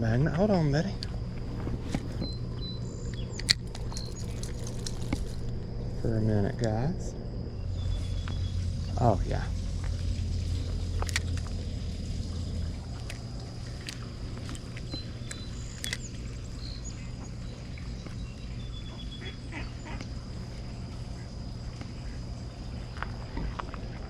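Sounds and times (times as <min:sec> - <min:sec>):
low hum: 0:00.0 - 0:24.0
outdoor background noise: 0:00.0 - 0:24.0
sharp clicks: 0:03.1 - 0:05.6, 0:13.0 - 0:16.2.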